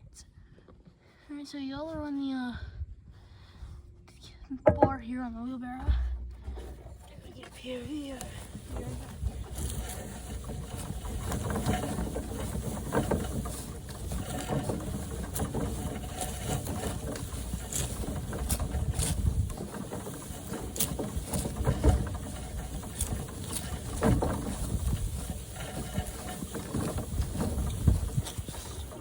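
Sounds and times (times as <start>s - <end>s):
wheelbarrow wheel rumbling: 4.6s - 29.0s
branches knocking and rattling: 6.0s - 29.0s.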